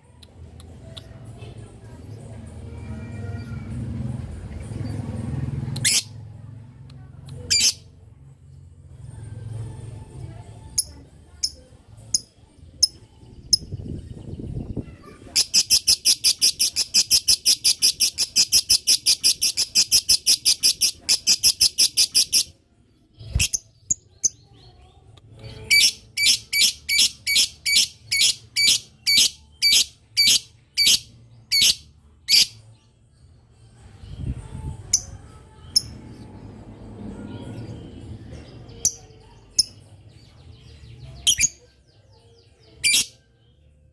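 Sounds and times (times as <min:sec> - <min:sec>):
lovebird chirping chatter: 0:05.8 - 0:06.1, 0:07.3 - 0:07.8, 0:10.8 - 0:22.6, 0:23.2 - 0:32.7, 0:38.7 - 0:43.3.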